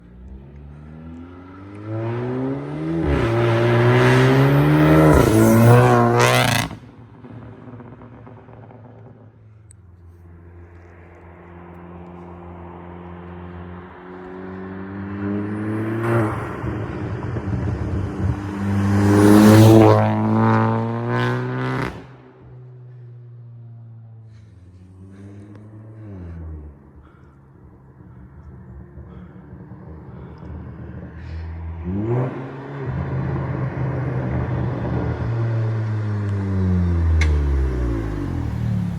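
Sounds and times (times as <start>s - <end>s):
car engine revving hard: 1.3s - 6.8s, 14.4s - 22.1s
exhaust crackles: 23.7s - 32.1s, 32.8s - 38.9s.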